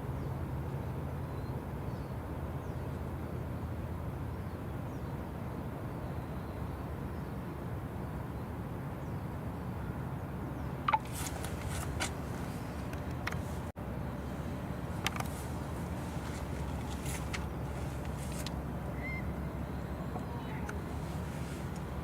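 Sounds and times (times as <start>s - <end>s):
low outdoor rumble: 0.0s - 22.0s
faint bird chirps: 18.9s - 20.8s.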